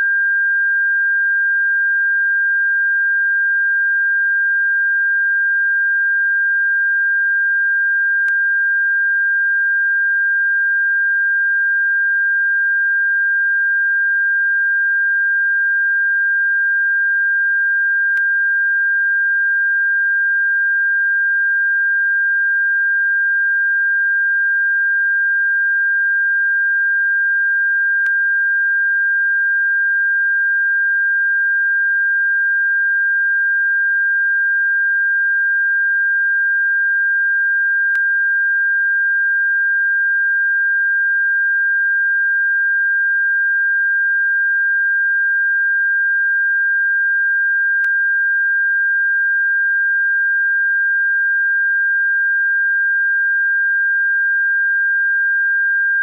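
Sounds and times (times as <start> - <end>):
high-pitched electronic sine tone: 0.0 - 56.0
faint click: 18.1 - 18.3.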